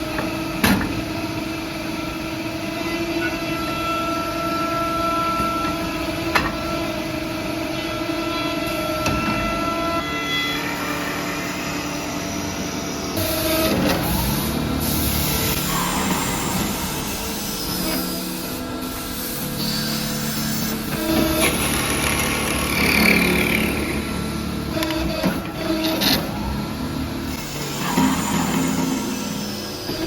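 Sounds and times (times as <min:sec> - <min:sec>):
wood lathe running: 0:20.1 - 0:25.0.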